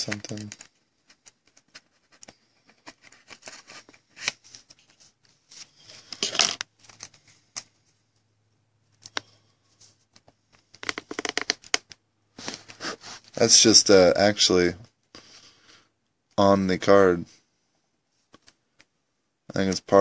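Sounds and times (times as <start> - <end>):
rustling scrape: 12.4 - 13.4.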